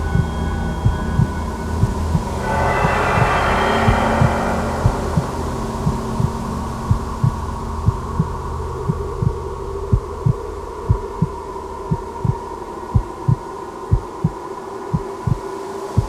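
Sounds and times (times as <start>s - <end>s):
low hum: 0.0s - 13.3s
heartbeat thumps: 6.9s - 14.4s.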